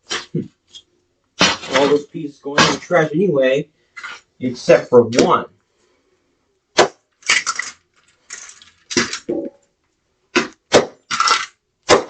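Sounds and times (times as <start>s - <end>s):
plastic pieces clattering: 7.1s - 9.4s, 11.0s - 11.6s.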